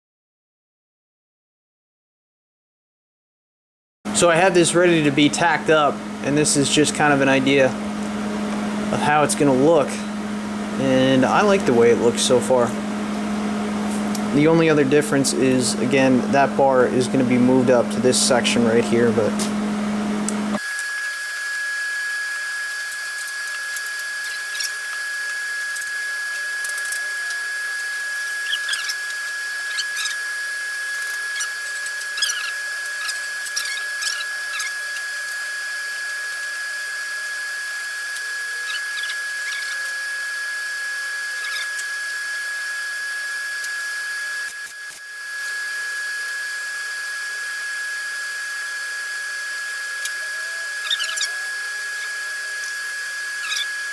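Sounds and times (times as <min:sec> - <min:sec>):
power tool whine: 0:04.1 - 0:53.9
small scratching ticks: 0:22.8 - 0:27.5, 0:28.3 - 0:29.1, 0:29.7 - 0:30.2, 0:30.9 - 0:35.5, 0:38.1 - 0:40.0, 0:41.4 - 0:41.9, 0:50.8 - 0:51.4, 0:53.4 - 0:53.7.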